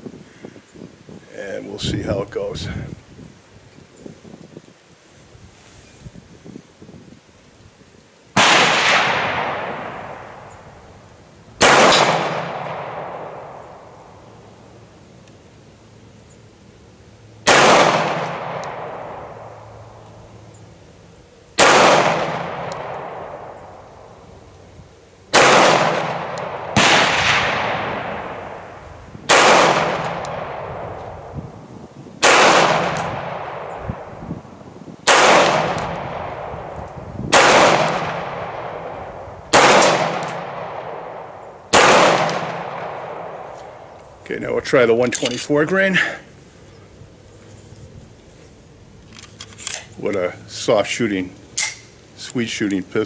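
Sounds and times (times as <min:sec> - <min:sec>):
pistol shots with echo: 0:08.4 - 0:10.5, 0:11.6 - 0:14.0, 0:17.4 - 0:19.6, 0:21.6 - 0:23.6, 0:25.3 - 0:31.0, 0:32.2 - 0:34.0, 0:35.0 - 0:43.8.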